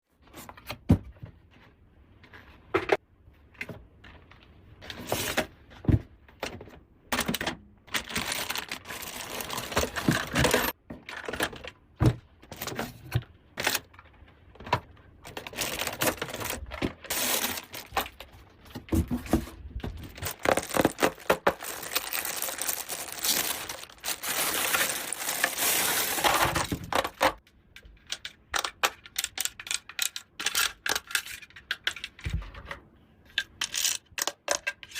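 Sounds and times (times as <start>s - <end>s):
plastic packaging rustling: 7.9s - 10.8s, 15.2s - 27.4s
plastic toy pieces clattering: 15.2s - 18.3s, 20.1s - 27.4s, 28.0s - 32.2s, 33.3s - 34.9s.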